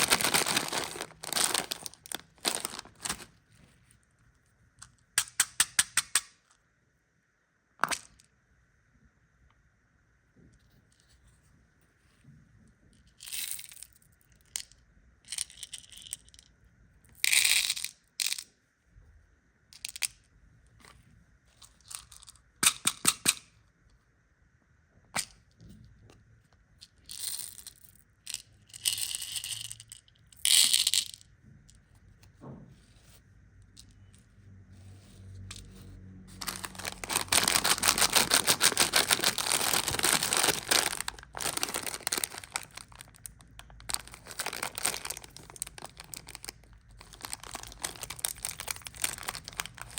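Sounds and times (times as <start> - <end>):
plastic packaging crinkling: 0.0 - 3.4, 36.3 - 49.9.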